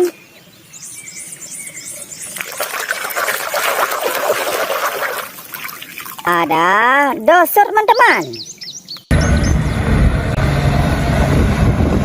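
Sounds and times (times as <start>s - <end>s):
water splashing and running: 2.2s - 7.8s.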